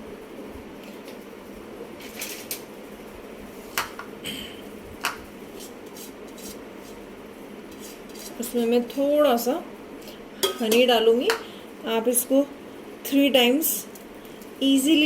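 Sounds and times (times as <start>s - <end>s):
steady low hum: 0.0s - 15.0s
utensils clinking against bowl: 10.4s - 11.5s.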